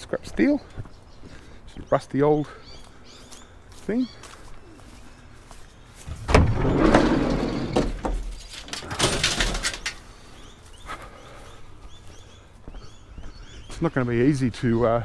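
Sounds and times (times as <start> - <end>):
metal clanks: 6.0 - 10.1
scrap steel scraping: 6.0 - 10.1.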